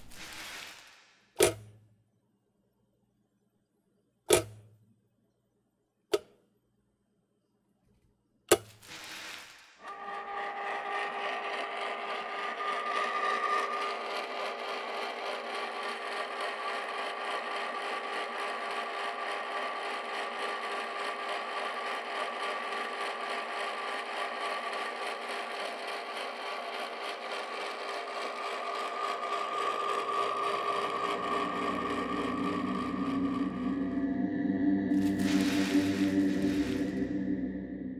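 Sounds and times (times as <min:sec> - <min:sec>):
small motor whirring: 0:00.0 - 0:01.1, 0:08.8 - 0:33.9, 0:35.0 - 0:37.1.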